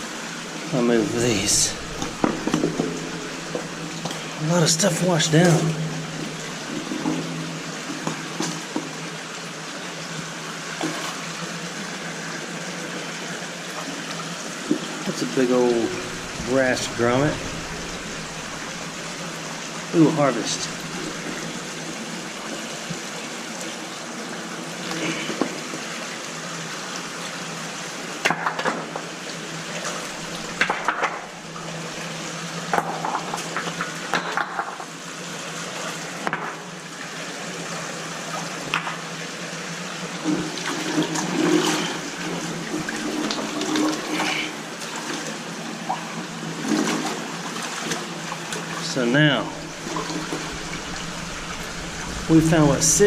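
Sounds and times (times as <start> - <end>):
creek water running: 0.0 - 53.0
splashes and stone knocks: 1.6 - 4.2.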